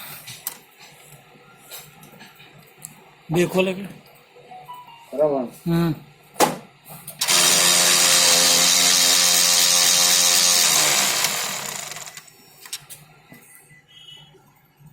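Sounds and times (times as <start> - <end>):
copier grinding whir: 7.2 - 12.8.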